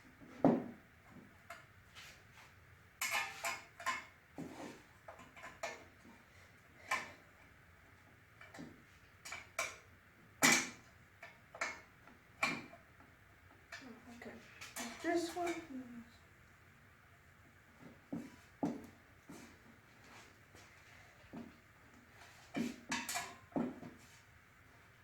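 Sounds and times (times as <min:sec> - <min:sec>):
metal tool clanking on metal: 0:22.9 - 0:23.4.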